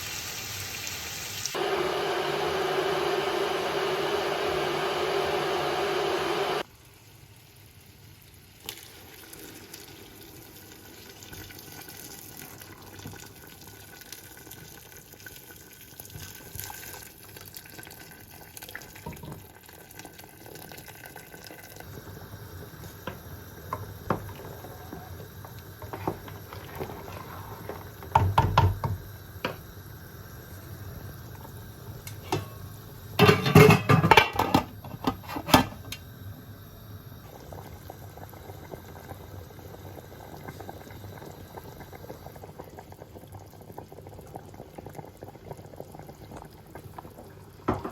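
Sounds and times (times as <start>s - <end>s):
liquid washing: 24.0s - 28.9s.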